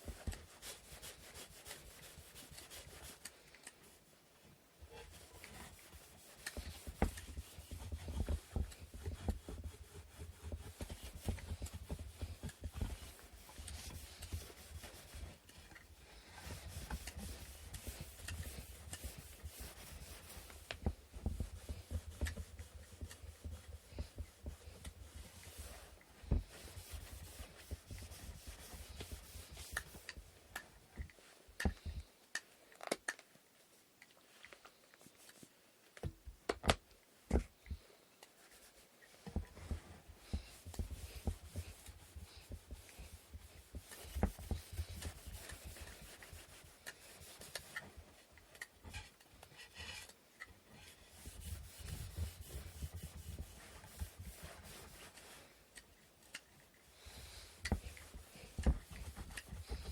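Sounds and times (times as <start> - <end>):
sandpaper rubbing wood: 0.0 - 3.2, 5.1 - 15.4, 16.1 - 30.2, 40.2 - 47.9, 51.1 - 55.5, 57.2 - 59.9.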